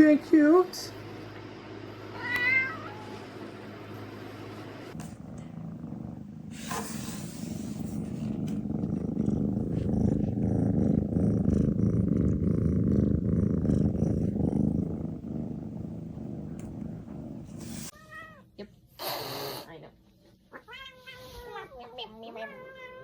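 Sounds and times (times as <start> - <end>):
cat purring: 0.0 - 18.0.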